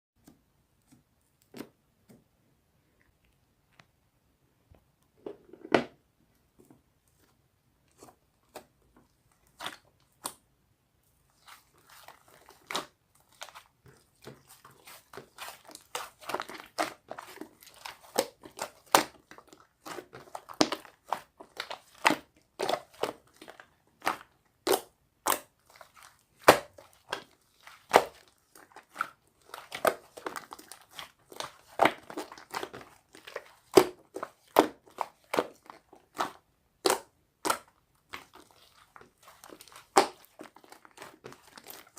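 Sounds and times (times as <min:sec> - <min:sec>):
slime crackling: 0:11.3 - 0:41.9.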